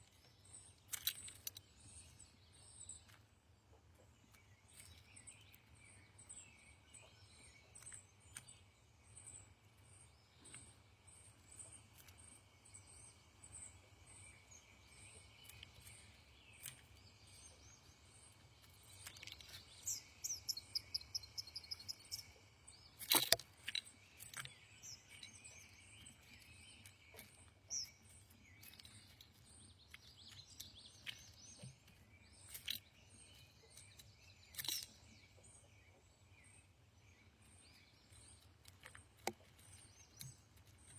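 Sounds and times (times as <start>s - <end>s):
faint regular ticks: 0.0s - 2.2s, 9.2s - 35.6s, 37.4s - 40.9s
songbirds calling: 0.0s - 40.9s
bird trill: 12.8s - 36.0s.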